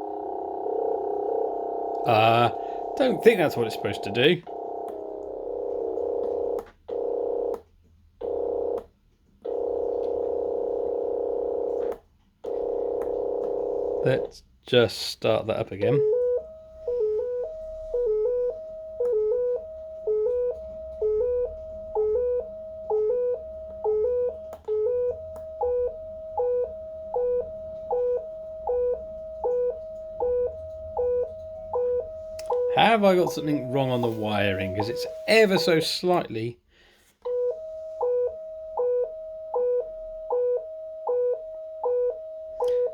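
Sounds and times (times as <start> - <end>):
buzzy synthesizer tone: 0.0 - 5.8, 25.0 - 36.0.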